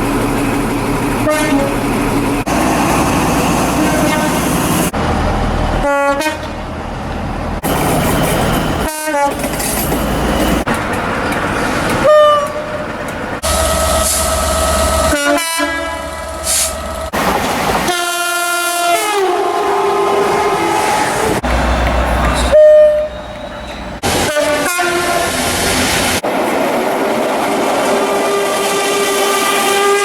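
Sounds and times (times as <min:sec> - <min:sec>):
train rumble and rail noise: 0:00.0 - 0:30.0
train horn blasts: 0:01.2 - 0:01.7, 0:03.8 - 0:04.5, 0:05.8 - 0:06.6, 0:08.8 - 0:09.4, 0:12.0 - 0:12.7, 0:15.0 - 0:16.7, 0:17.9 - 0:21.0, 0:22.4 - 0:23.5, 0:24.1 - 0:25.4, 0:28.2 - 0:30.0.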